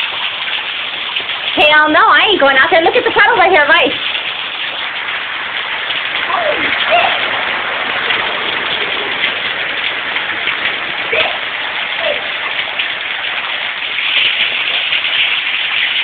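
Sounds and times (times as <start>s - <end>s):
hail and heavy rain: 0.0s - 16.0s.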